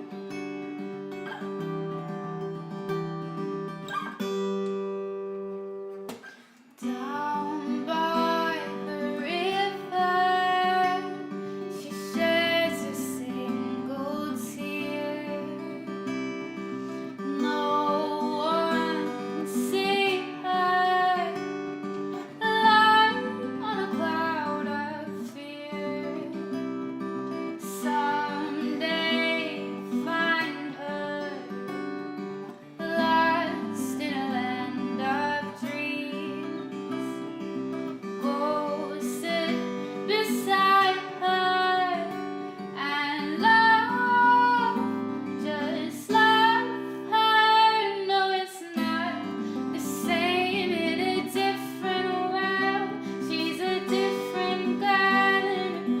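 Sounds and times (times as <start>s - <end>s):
acoustic guitar chords: 0.0s - 56.0s
woman singing: 6.8s - 56.0s.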